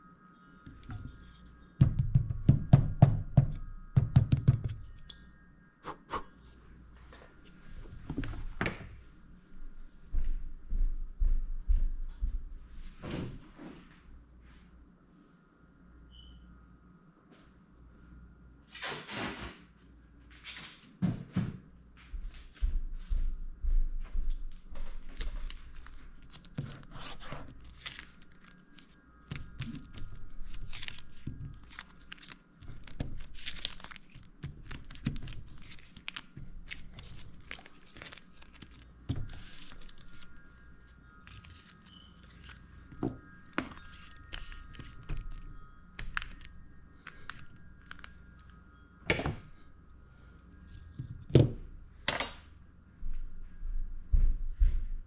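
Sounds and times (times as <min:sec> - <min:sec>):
rustling and crinkling: 0:24.8 - 0:48.6.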